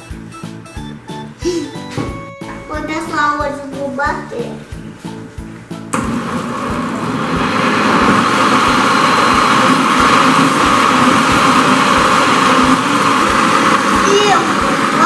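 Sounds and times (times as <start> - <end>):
blender motor running: 6.0 - 15.0.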